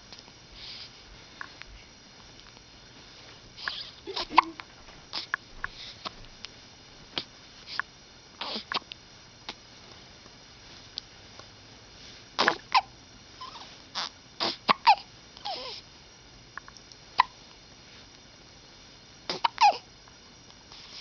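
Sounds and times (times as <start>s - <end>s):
baby hiccupping: 3.6s - 5.4s, 7.7s - 8.9s, 12.4s - 15.8s, 19.3s - 19.9s.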